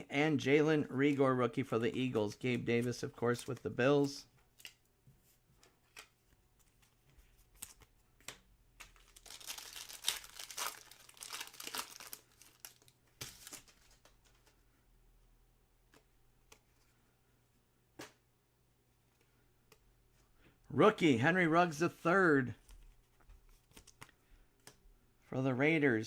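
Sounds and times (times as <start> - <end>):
plastic packaging crinkling: 9.0 - 13.9.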